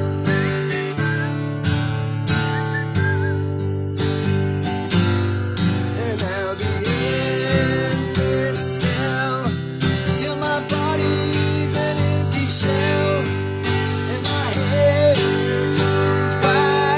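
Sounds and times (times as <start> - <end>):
acoustic guitar strumming chords: 0.0 - 16.9
wavering lead melody: 0.6 - 3.6.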